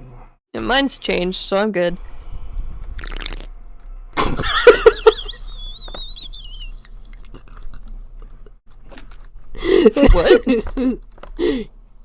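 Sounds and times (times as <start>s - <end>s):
slurping mouth noises: 2.6s - 3.6s.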